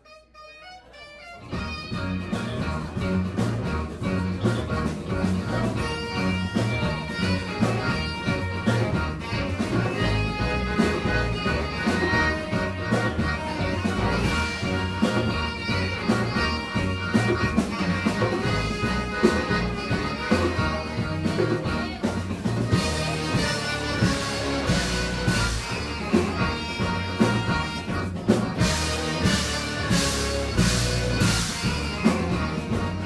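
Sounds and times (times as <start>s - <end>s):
live band music: 0.0s - 33.0s
bass line: 1.4s - 33.0s.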